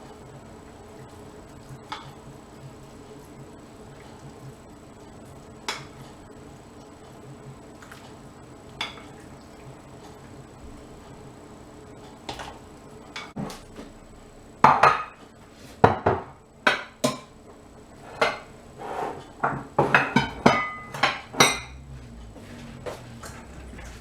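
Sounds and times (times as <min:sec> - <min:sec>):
metal pot and utensils clanking: 0:19.1 - 0:24.0.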